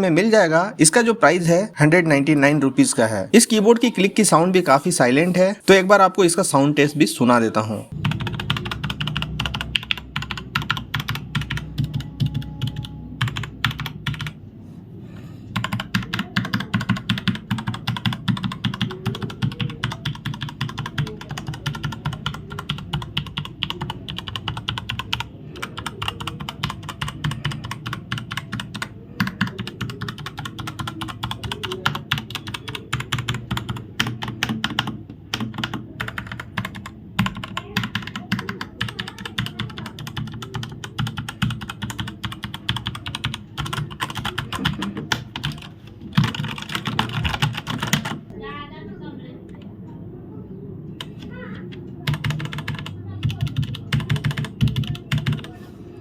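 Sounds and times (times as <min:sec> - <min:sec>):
mechanical keyboard typing: 0:07.9 - 0:14.4, 0:15.5 - 0:48.3, 0:51.0 - 0:55.6.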